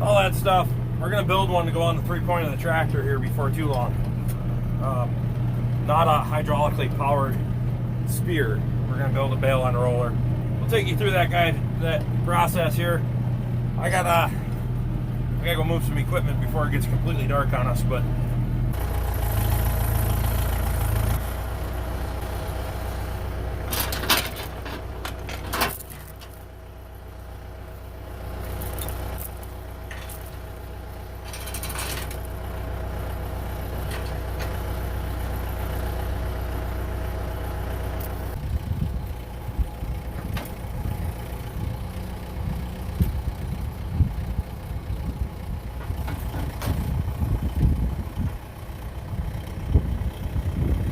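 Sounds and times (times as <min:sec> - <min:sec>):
tractor engine idling: 0:00.0 - 0:50.9
rough low rumble: 0:37.0 - 0:50.9.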